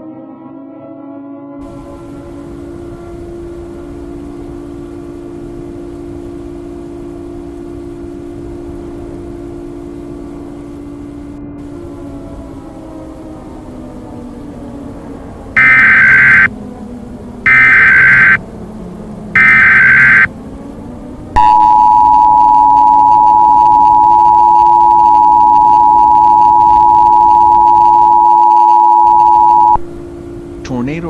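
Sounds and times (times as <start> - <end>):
low background hum: 1.7 - 31.0
screeching data bursts: 15.6 - 16.5, 17.5 - 18.4, 19.4 - 20.3, 21.4 - 29.8
two-tone attention signal: 15.6 - 16.5, 17.5 - 18.4, 19.4 - 20.3, 21.4 - 29.9.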